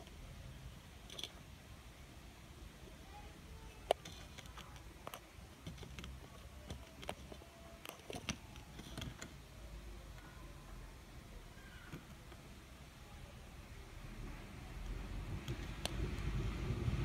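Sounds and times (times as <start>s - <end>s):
small clicks and taps: 3.8s - 9.4s, 14.8s - 16.3s.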